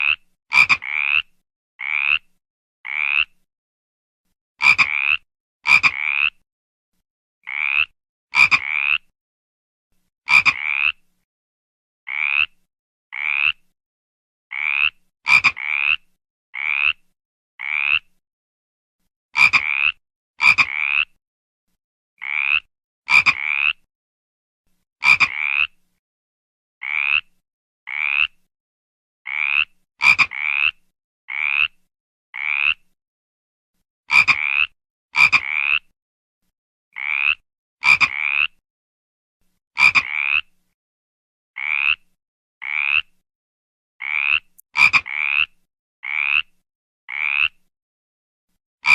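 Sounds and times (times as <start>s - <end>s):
frog croaking: 0.0s - 2.3s, 2.9s - 3.4s, 4.6s - 6.4s, 7.5s - 9.1s, 10.3s - 11.0s, 12.1s - 12.6s, 13.2s - 13.6s, 14.5s - 17.0s, 17.6s - 18.1s, 19.4s - 21.1s, 22.2s - 23.8s, 25.0s - 25.8s, 26.8s - 27.3s, 27.9s - 28.4s, 29.3s - 31.8s, 32.4s - 32.8s, 34.1s - 35.8s, 37.0s - 38.6s, 39.8s - 40.5s, 41.6s - 42.0s, 42.6s - 43.1s, 44.0s - 46.5s, 47.1s - 47.6s.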